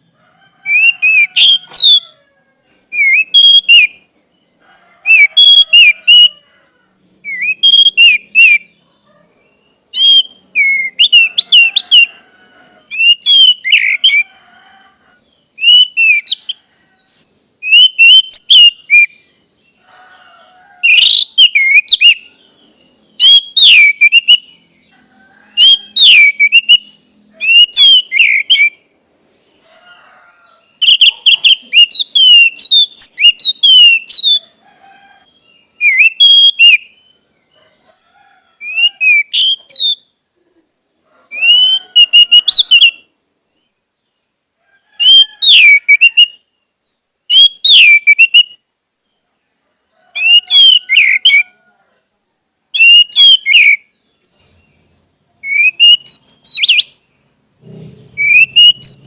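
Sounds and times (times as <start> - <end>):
thrush singing whistles: 0.0 - 2.2, 2.8 - 4.1, 5.0 - 37.9, 38.6 - 40.2, 41.3 - 43.7, 45.0 - 48.7, 50.2 - 51.6, 52.8 - 59.0
steady high hiss: 5.6 - 42.4, 53.7 - 59.0.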